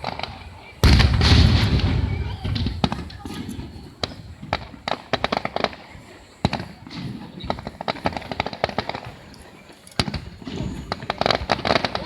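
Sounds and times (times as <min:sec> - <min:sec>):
loud fireworks bang: 0:00.0 - 0:05.8
fireworks crackling pops: 0:00.0 - 0:12.0.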